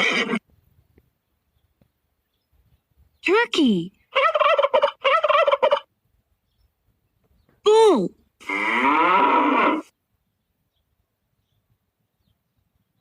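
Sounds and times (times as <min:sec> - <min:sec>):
turkey gobbling: 0:04.1 - 0:05.9
cow mooing: 0:08.4 - 0:09.9.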